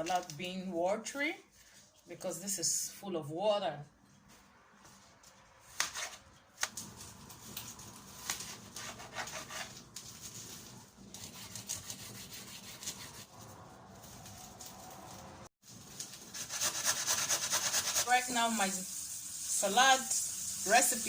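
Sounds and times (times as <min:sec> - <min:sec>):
knife scraping chopping board: 0:05.7 - 0:06.3, 0:08.2 - 0:10.0, 0:16.3 - 0:18.1.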